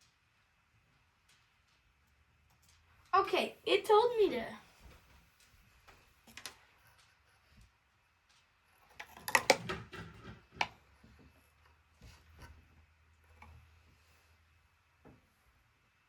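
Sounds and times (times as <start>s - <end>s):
plastic and metal clicks and rattles: 5.4s - 7.1s, 8.2s - 11.2s.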